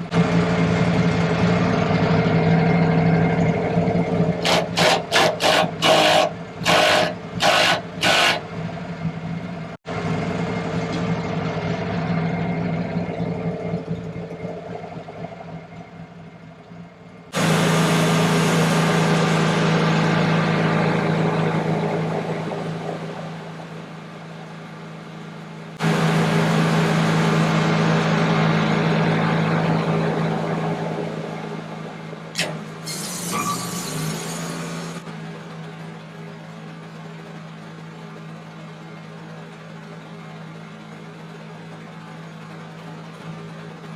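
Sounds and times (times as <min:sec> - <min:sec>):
sawmill engine droning: 0:00.0 - 0:43.9
bandsaw blade cutting log: 0:04.4 - 0:08.4, 0:32.4 - 0:35.0.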